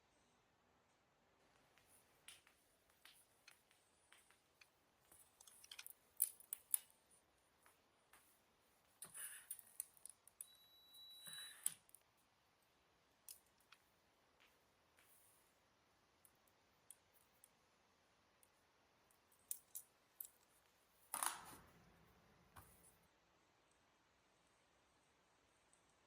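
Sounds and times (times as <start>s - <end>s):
faint clicks and snipping: 1.5s - 10.6s, 11.3s - 15.4s, 16.2s - 17.7s, 18.4s - 21.7s.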